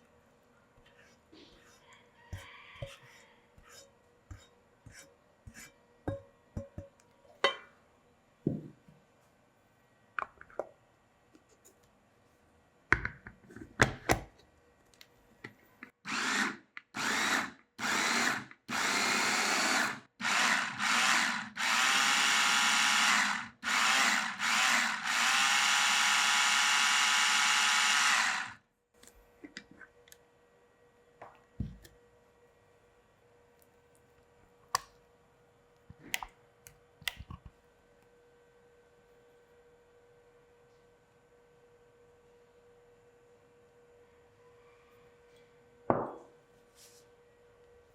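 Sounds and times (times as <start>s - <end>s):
electric kitchen motor running: 16.1s - 28.6s.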